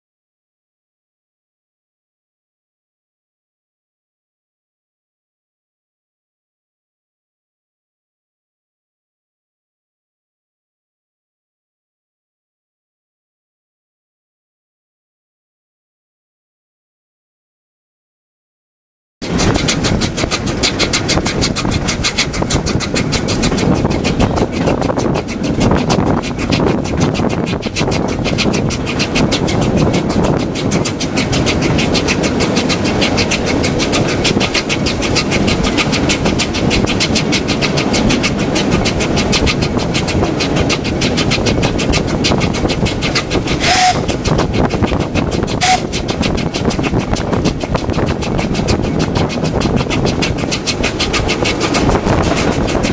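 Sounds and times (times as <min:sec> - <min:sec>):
train running on rails: 0:19.2 - 0:52.9
short sharp sounds: 0:43.6 - 0:44.1.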